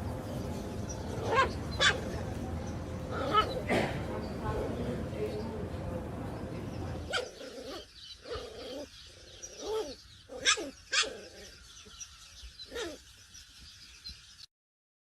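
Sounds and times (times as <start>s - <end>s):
dog yipping: 1.2s - 2.1s, 7.1s - 8.9s, 9.6s - 11.5s, 12.7s - 13.0s.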